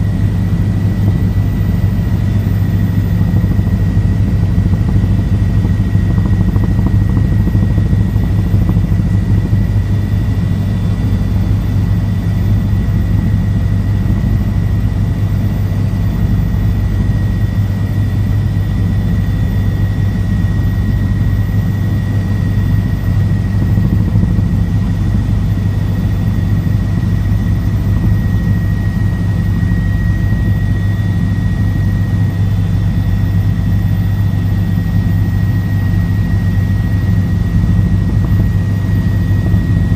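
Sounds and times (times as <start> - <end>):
helicopter engine and rotor: 0.0 - 39.9.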